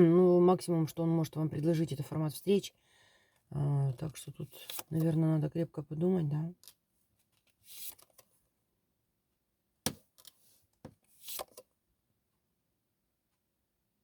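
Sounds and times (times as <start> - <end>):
cards swishing: 7.6 - 8.2, 11.1 - 11.6.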